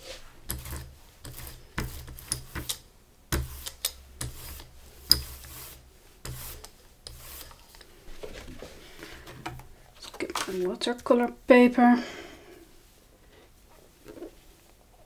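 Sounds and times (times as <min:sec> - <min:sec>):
rubber roller rolling paint: 0:00.0 - 0:02.7, 0:03.4 - 0:10.8.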